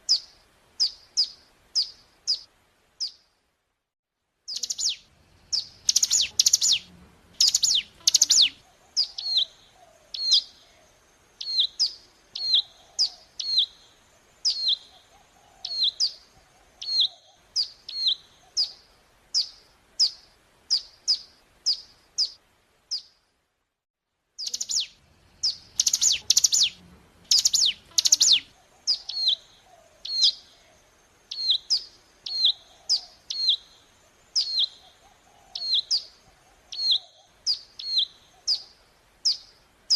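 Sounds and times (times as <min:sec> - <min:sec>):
bird chirping sharply: 0:04.5 - 0:09.6, 0:24.4 - 0:30.5.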